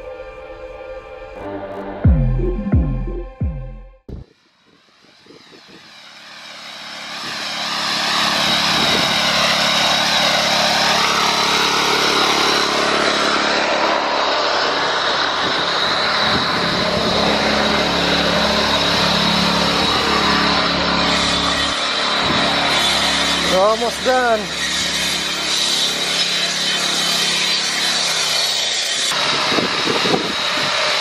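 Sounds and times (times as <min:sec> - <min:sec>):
engine running: 0:00.0 - 0:31.0.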